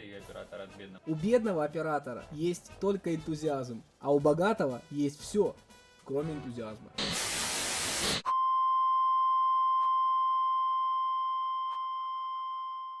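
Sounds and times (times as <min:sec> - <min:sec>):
hissing static: 0:07.0 - 0:08.3.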